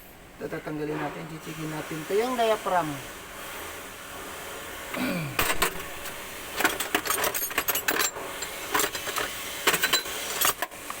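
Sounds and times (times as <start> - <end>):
hand tools clicking on metal: 6.6 - 11.0.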